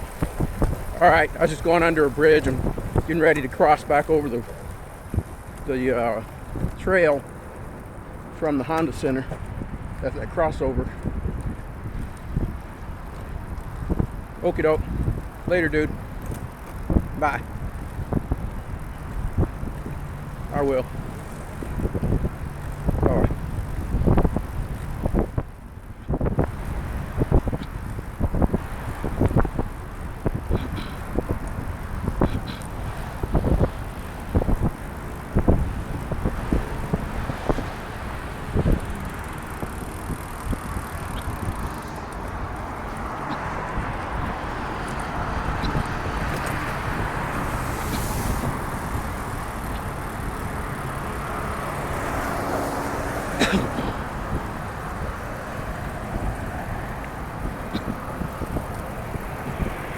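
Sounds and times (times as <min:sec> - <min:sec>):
tyres hissing on wet road: 0:00.0 - 0:09.4, 0:28.6 - 0:59.9
wind buffeting microphone: 0:00.0 - 0:59.9.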